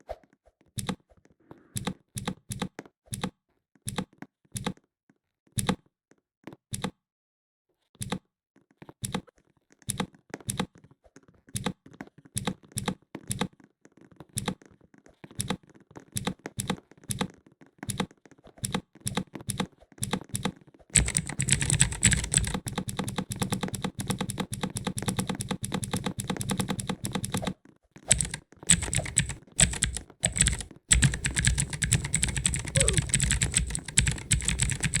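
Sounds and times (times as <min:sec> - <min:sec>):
mechanical keyboard clicking: 0:15.4 - 0:15.6, 0:17.9 - 0:35.0.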